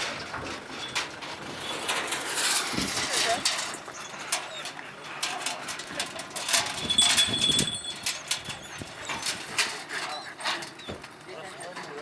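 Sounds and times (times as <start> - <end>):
dogs whining and yapping: 2.5 - 11.7.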